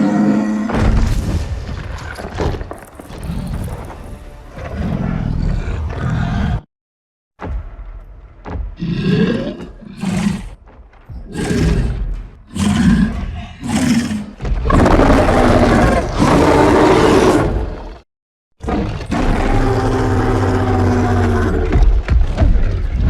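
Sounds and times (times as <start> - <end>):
monster roaring: 0.0 - 1.0, 3.1 - 4.0, 4.6 - 6.7, 8.8 - 10.6, 11.3 - 17.9, 18.6 - 22.0.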